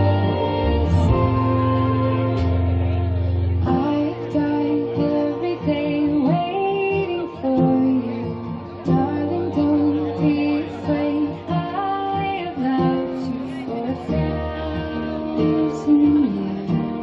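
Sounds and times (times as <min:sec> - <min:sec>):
plucked guitar: 0:00.0 - 0:17.0
woman singing: 0:00.0 - 0:17.0.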